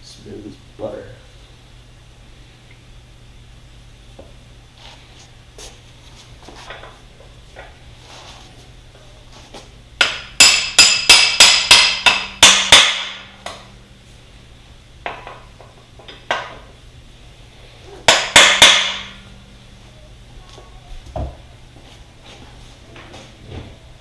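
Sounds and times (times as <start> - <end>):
hammer striking metal punch: 10.0 - 13.6, 18.1 - 19.2.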